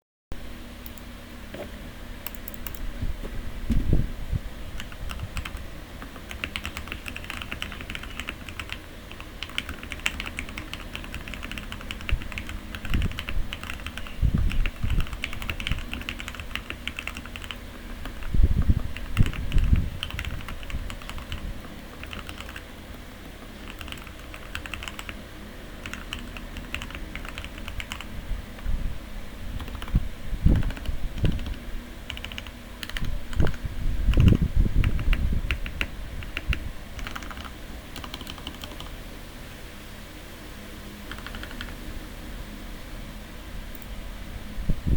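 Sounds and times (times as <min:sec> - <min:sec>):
mechanical keyboard typing: 0:02.2 - 0:02.8, 0:04.8 - 0:25.2, 0:25.8 - 0:28.1, 0:29.6 - 0:39.0, 0:41.1 - 0:41.8.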